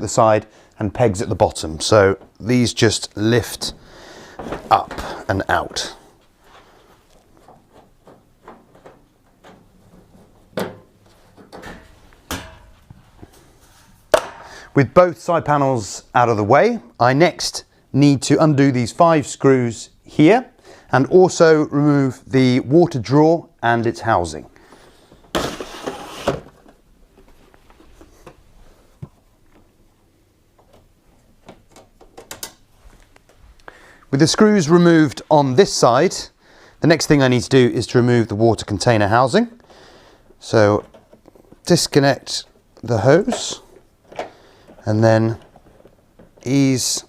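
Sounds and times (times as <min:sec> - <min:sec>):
dryer panels clunking: 0:07.4 - 0:12.9.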